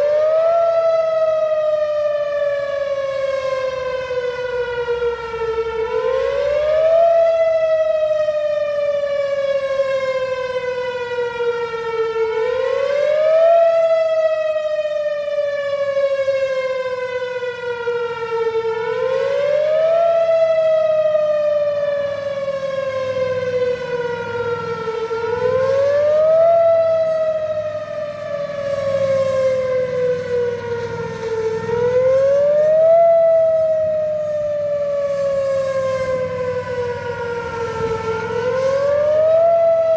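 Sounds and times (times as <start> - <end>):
warning siren wailing: 0.0 - 39.9.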